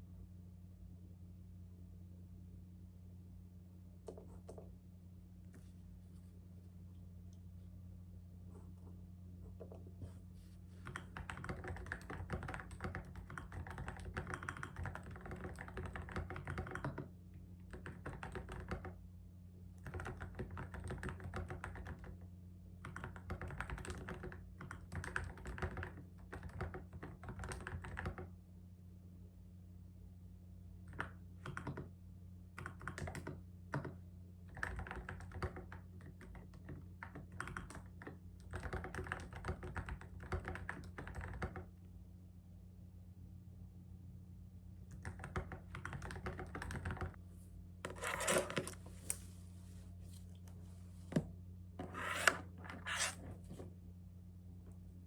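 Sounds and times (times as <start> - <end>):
steady low hum: 0.0 - 15.5
typing on computer keyboard: 10.8 - 19.0, 19.8 - 22.2, 22.8 - 28.3, 30.9 - 31.9, 32.6 - 41.7, 44.9 - 47.2.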